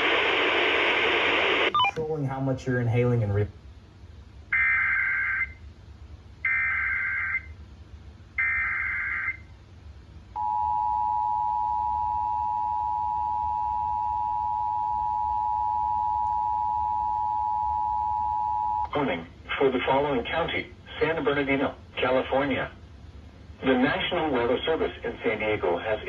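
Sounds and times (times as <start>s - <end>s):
two-tone alert signal: 1.8s - 2.0s.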